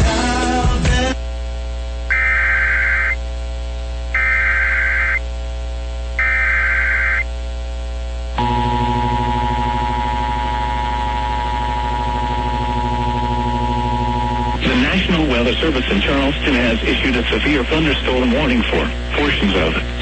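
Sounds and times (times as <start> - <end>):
low hum: 2.2 - 20.0
digital data warble: 4.2 - 5.2.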